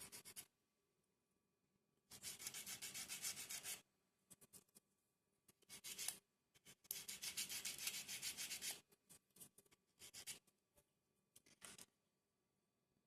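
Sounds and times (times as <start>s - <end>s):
sandpaper rubbing on wood: 2.2s - 3.8s, 7.0s - 8.8s.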